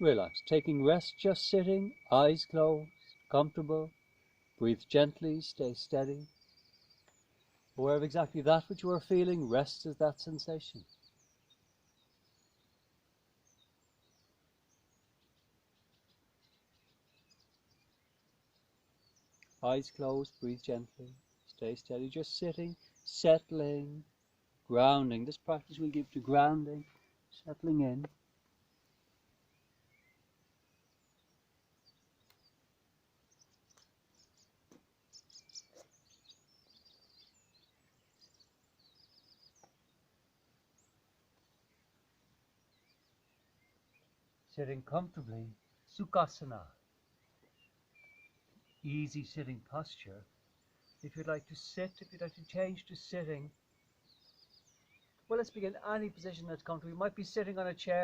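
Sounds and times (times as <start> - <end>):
birds chirping: 0.0 - 58.0
low steady hiss: 0.0 - 58.0
soft clicks: 32.2 - 32.5.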